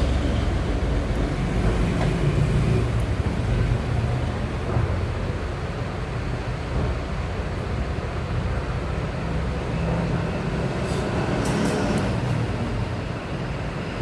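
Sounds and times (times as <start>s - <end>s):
low rumbling background noise: 0.0s - 14.0s.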